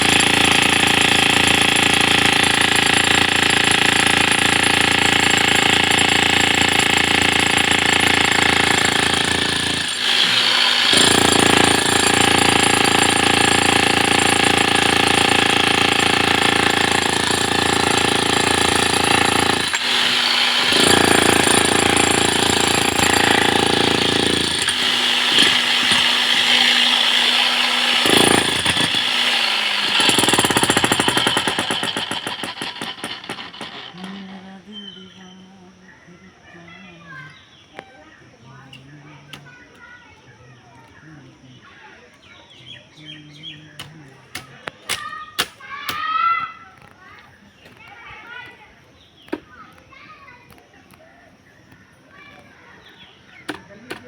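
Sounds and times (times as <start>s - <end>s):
breaker hammer chiselling concrete: 0.0s - 34.3s, 43.8s - 46.2s.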